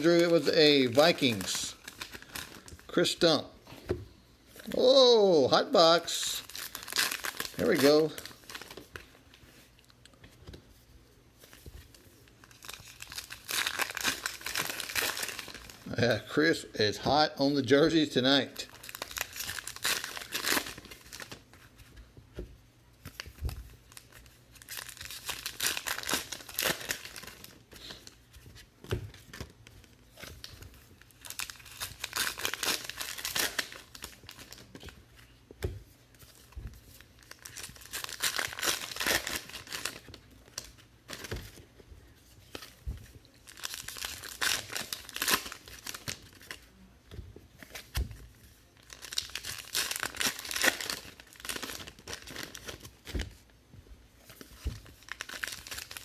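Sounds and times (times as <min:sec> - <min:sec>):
wrappers tearing and crinkling: 0:00.0 - 0:02.9, 0:06.0 - 0:08.9, 0:12.4 - 0:16.0, 0:18.6 - 0:21.5, 0:23.9 - 0:28.2, 0:30.1 - 0:34.9, 0:36.4 - 0:41.6, 0:43.4 - 0:46.7, 0:48.8 - 0:53.2, 0:54.3 - 0:56.0.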